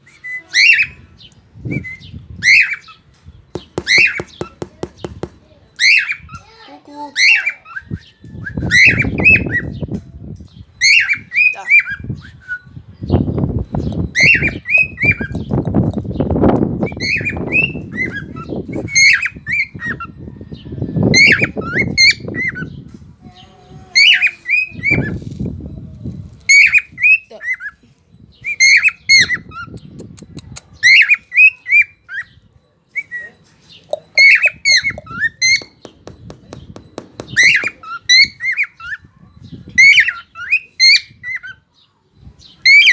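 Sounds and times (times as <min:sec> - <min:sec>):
cockatiel chirping squawks: 0:03.9 - 0:04.4.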